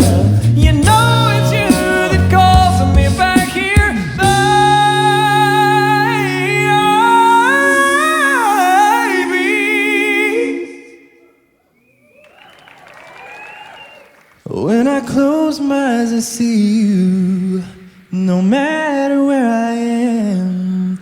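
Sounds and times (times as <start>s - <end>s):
deep bass voice: 0.0s - 7.6s
lead voice singing runs: 0.0s - 8.2s
a cappella group holding chord: 0.0s - 11.3s.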